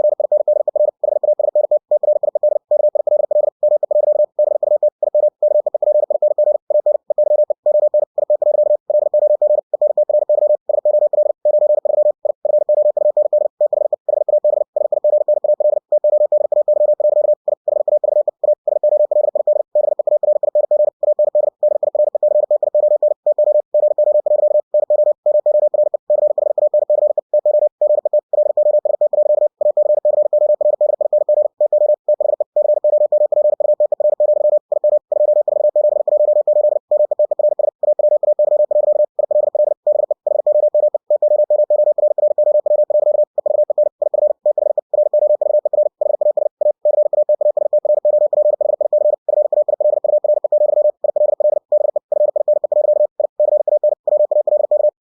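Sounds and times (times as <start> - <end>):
morse code tone: 0.0 - 55.0.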